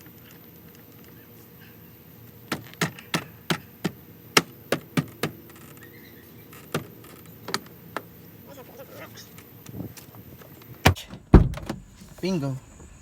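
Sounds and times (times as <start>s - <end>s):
knocks and clicks on car door: 2.5s - 5.5s, 10.8s - 11.9s.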